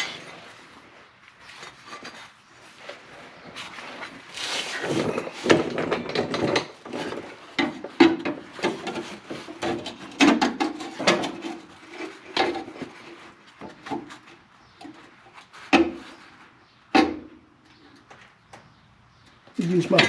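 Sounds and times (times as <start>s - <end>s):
metal parts and tools clattering: 4.7s - 7.2s.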